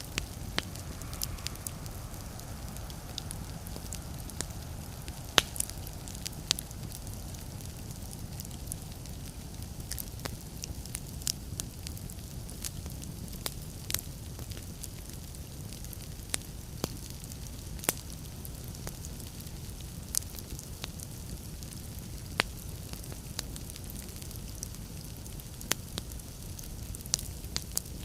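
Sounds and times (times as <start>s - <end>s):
fire rumble: 0.0s - 28.0s
wood fire pops and snaps: 2.8s - 15.1s.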